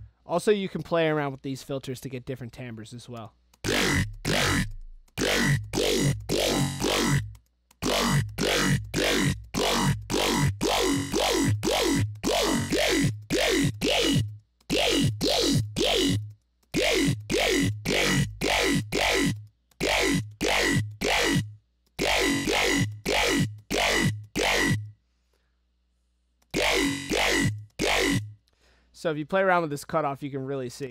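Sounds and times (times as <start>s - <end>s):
dubstep bass hits with pitch sweep: 3.6s - 24.9s, 26.6s - 28.3s.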